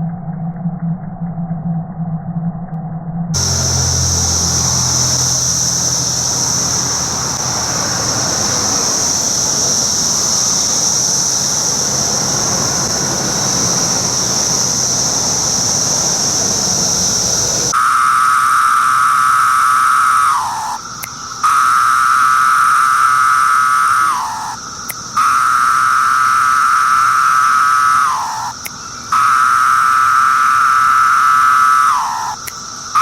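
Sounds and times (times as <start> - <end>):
cicadas high-pitched buzz: 3.4 - 33.0
lower droning insect call: 3.4 - 33.0.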